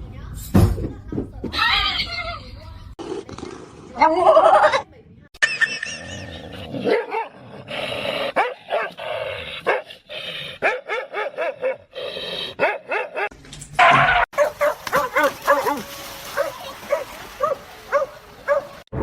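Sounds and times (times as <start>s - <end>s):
dog barking and yipping: 6.8s - 7.3s, 8.4s - 9.0s, 10.6s - 11.9s, 12.6s - 18.8s.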